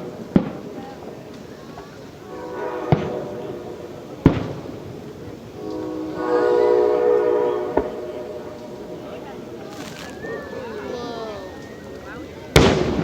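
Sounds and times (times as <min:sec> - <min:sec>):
firework bangs: 0:00.0 - 0:05.1, 0:09.3 - 0:13.0
steady horn blowing: 0:02.2 - 0:03.7, 0:05.6 - 0:11.7.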